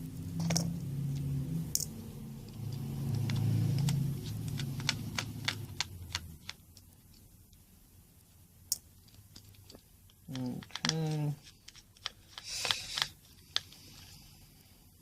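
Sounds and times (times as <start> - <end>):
low hum: 0.0 - 6.8
tiny screws being handled: 0.4 - 7.6, 8.7 - 14.0.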